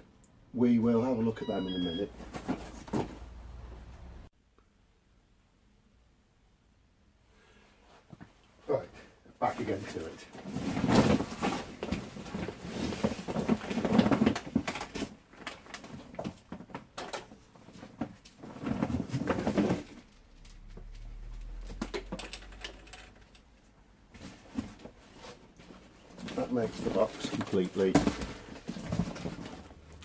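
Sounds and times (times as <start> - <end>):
objects knocking on cardboard box: 27.3 - 29.7.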